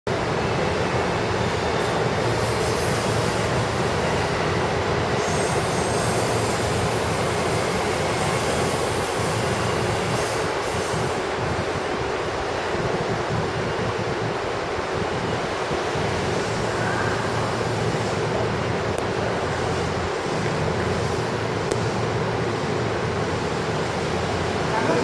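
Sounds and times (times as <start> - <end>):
train wheels rumbling on track: 0.1 - 25.0
high wheel squeal: 1.4 - 11.2.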